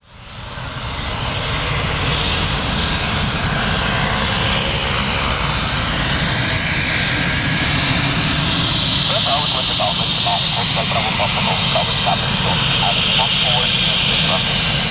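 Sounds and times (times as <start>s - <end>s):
turboprop engine running: 0.1s - 14.9s.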